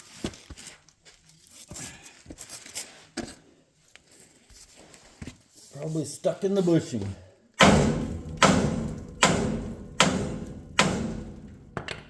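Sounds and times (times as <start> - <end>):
hammer ringing on metal: 7.6 - 11.6.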